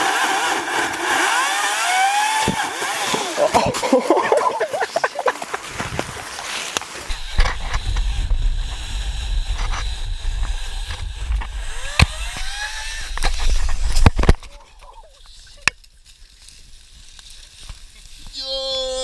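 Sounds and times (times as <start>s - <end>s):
electric chainsaw cutting wood: 0.0s - 14.5s.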